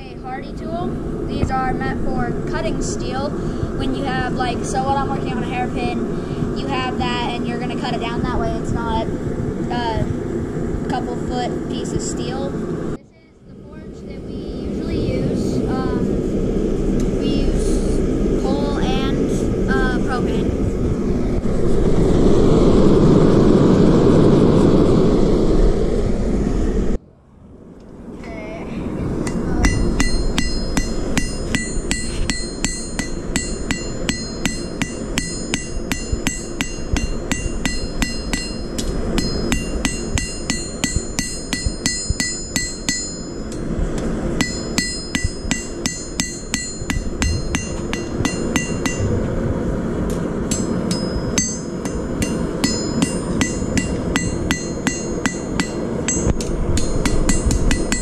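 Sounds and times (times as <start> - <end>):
steady low rumble: 0.0 - 58.0
hammer striking steel on anvil: 29.3 - 43.7, 44.4 - 49.1, 50.5 - 58.0.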